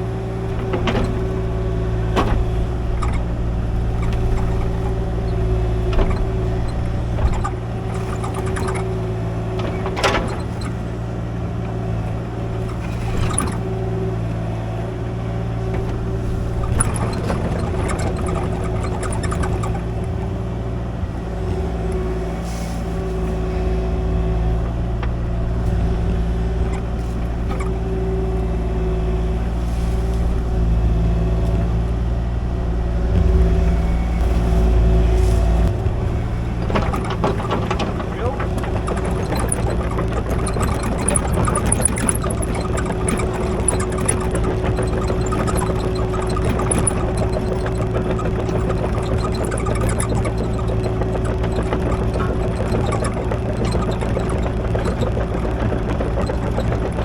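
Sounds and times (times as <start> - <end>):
excavator diesel engine running: 0.0 - 57.0
metal knocks and clanks: 0.2 - 11.0, 15.7 - 19.9, 33.6 - 57.0.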